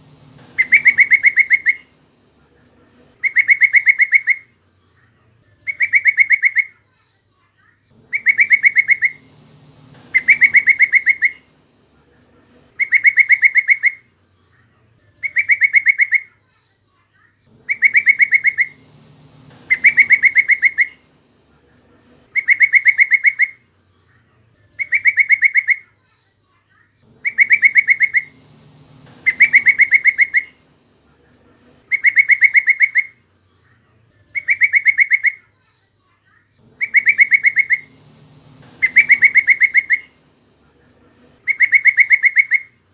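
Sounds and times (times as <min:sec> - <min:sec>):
bird chattering calls: 0:00.0 - 0:02.2, 0:02.9 - 0:04.6, 0:05.7 - 0:06.8, 0:08.0 - 0:11.7, 0:12.5 - 0:14.1, 0:15.2 - 0:16.3, 0:17.5 - 0:21.4, 0:22.0 - 0:23.7, 0:24.8 - 0:25.9, 0:27.1 - 0:30.9, 0:31.6 - 0:33.3, 0:34.3 - 0:35.5, 0:36.6 - 0:42.9
faint low rumble: 0:00.0 - 0:06.4, 0:07.9 - 0:15.8, 0:17.5 - 0:25.4, 0:27.0 - 0:34.9, 0:36.6 - 0:42.9.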